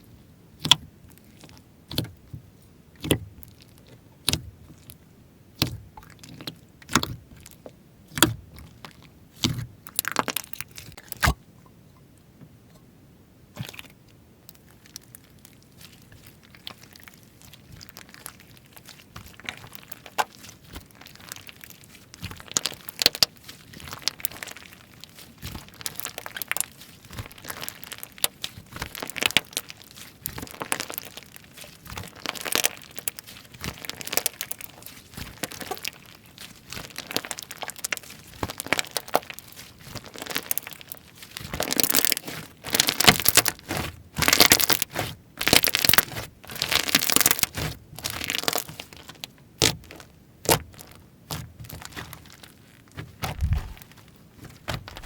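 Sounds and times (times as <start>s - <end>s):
slime squishing: 0.6s - 2.4s, 3.0s - 5.0s, 5.6s - 11.4s, 13.6s - 55.0s
hands playing with slime: 14.5s - 55.0s.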